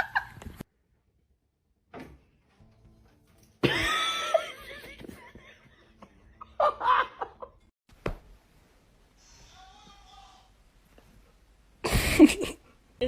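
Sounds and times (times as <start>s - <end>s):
person laughing: 3.6s - 7.6s, 11.8s - 12.7s.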